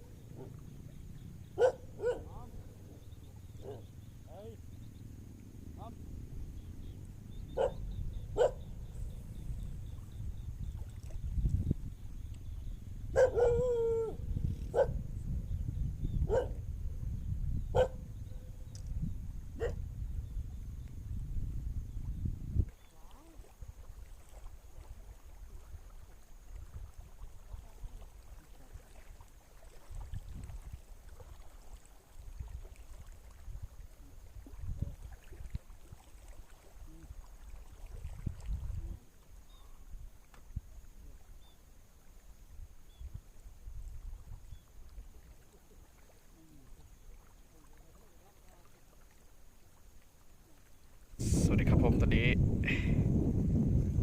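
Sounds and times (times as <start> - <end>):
wind rumbling on microphone: 0.0 - 29.1, 29.8 - 41.5, 42.4 - 45.3, 51.1 - 54.0
dog barking: 1.6 - 2.3, 3.6 - 3.9, 7.6 - 7.8, 8.4 - 8.6, 13.2 - 13.8, 14.7 - 15.0, 16.3 - 16.6, 17.7 - 18.0, 19.6 - 19.8
high-pitched hiss: 51.2 - 52.4.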